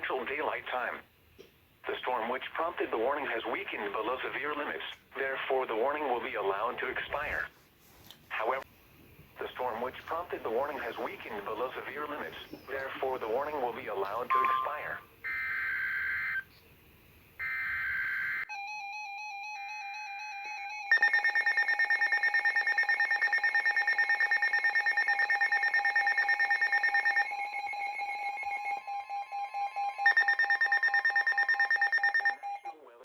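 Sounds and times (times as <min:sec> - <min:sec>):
pulsing electronic alarm tone: 0:10.6 - 0:16.5, 0:17.4 - 0:33.0.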